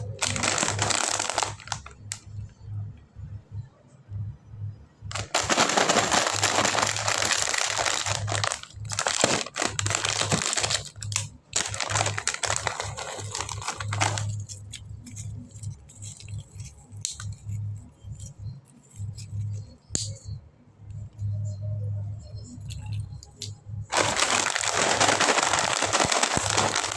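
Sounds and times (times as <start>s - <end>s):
plastic packaging crinkling: 0.0s - 2.2s, 5.1s - 18.3s, 23.9s - 26.9s
low pulsing background music: 0.0s - 26.9s.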